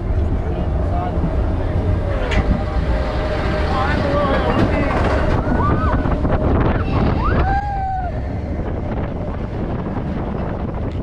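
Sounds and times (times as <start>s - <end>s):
roller coaster rumbling: 0.0s - 11.0s
wind buffeting microphone: 0.0s - 11.0s
person whooping: 6.8s - 8.2s.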